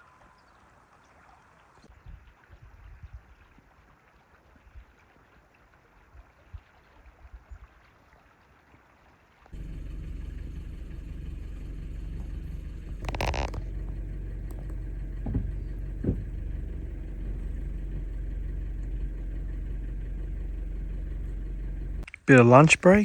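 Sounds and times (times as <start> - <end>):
vehicle engine running: 9.5 - 23.0
light knocks: 12.9 - 17.5.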